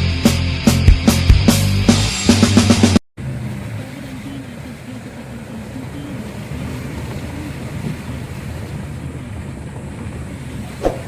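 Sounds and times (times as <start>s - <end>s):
vehicle engine running: 0.0s - 10.8s
wind rushing over microphone: 7.0s - 11.0s.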